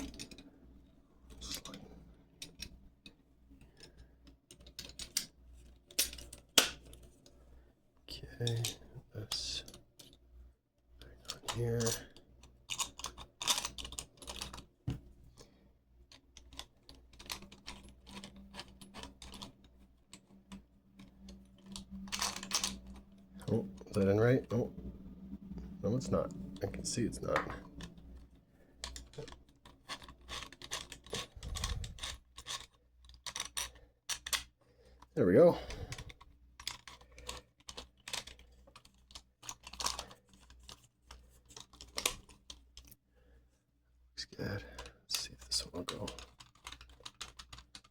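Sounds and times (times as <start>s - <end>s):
small metal lock parts clicking: 1.3s - 7.0s, 8.4s - 10.2s, 11.2s - 14.7s, 16.1s - 24.1s, 28.8s - 34.6s, 35.7s - 43.0s, 44.7s - 47.9s.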